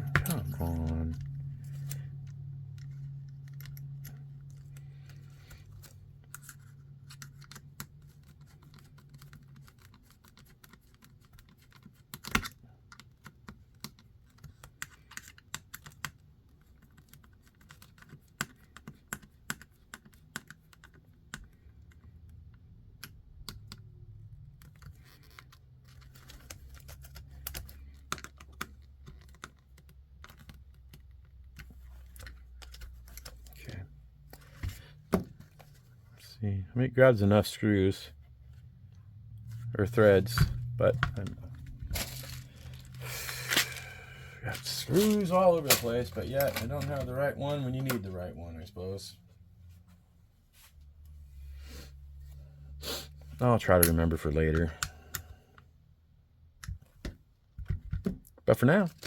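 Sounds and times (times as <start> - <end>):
low hum: 0.0 - 7.6, 31.5 - 50.2.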